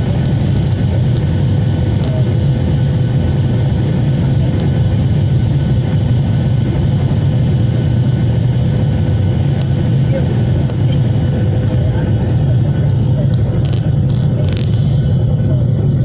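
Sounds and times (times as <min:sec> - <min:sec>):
jet engine cabin rumble: 0:00.0 - 0:16.0.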